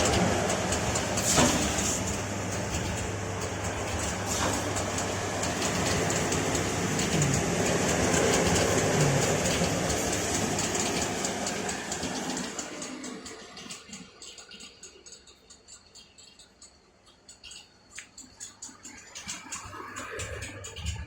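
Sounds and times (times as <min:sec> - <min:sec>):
fast rhythmic ticking: 0:00.0 - 0:01.3, 0:02.0 - 0:21.0
sanding machine hum and hiss: 0:04.2 - 0:13.2.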